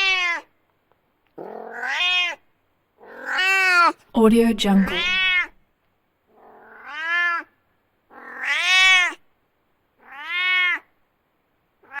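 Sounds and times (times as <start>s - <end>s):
cat meowing: 0.0s - 0.5s, 1.4s - 2.4s, 3.0s - 4.0s, 4.8s - 5.6s, 6.4s - 7.5s, 8.1s - 9.2s, 10.0s - 10.9s.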